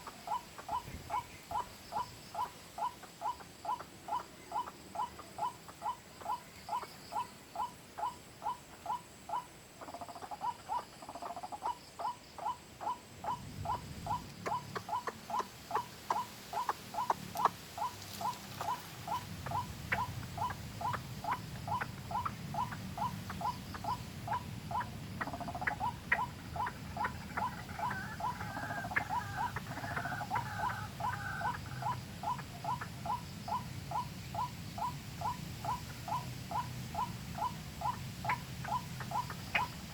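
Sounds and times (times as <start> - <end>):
waterhen calling: 0.0 - 39.9.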